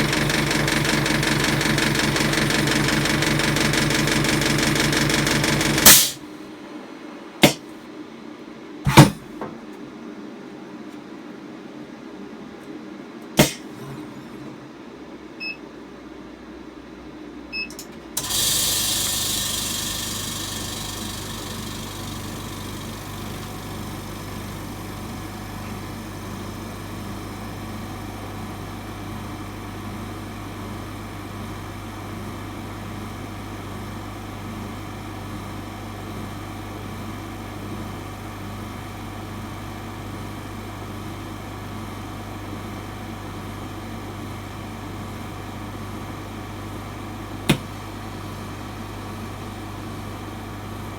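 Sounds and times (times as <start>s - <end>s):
machine hiss: 0.0s - 6.2s, 18.2s - 26.1s
machine motor hum: 0.0s - 6.2s, 13.4s - 14.5s, 18.2s - 30.5s.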